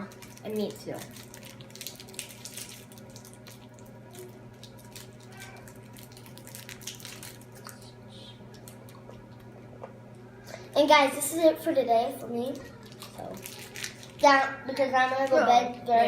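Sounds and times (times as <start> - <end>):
candy wrapper crinkling: 0.0 - 7.8, 12.5 - 14.3
faint electrical hum: 0.0 - 16.0.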